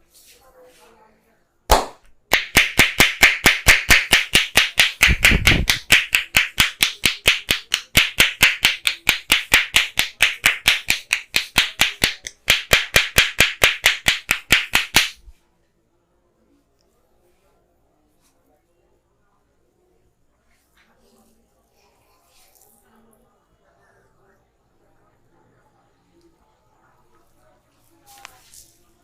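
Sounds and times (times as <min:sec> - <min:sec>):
hands clapping on head: 0:01.7 - 0:15.2.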